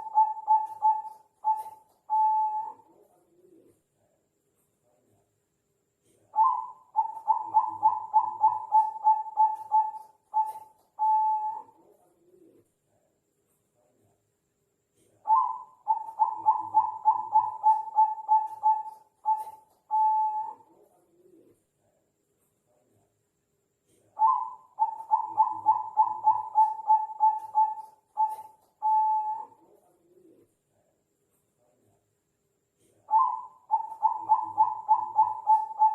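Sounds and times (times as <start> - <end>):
dove cooing: 0.0 - 3.7, 6.4 - 12.6, 15.3 - 21.5, 24.2 - 30.4, 33.1 - 35.9.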